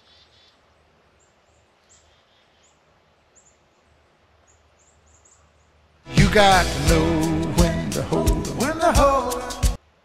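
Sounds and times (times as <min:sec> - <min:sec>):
faint bird chirps: 0:00.0 - 0:05.8.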